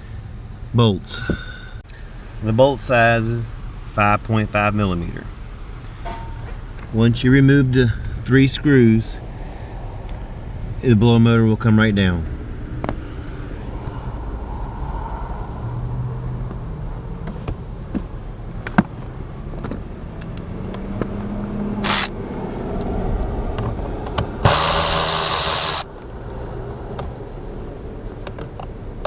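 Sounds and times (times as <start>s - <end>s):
short burst of tool noise: 21.8s - 22.1s
tool clicks and scrapes: 21.8s - 22.2s.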